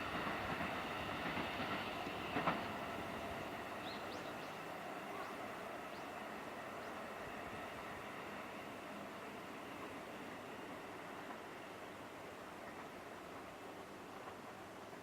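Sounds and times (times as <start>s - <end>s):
train clunk: 0.0s - 4.5s
train wheels on rails: 0.0s - 15.0s.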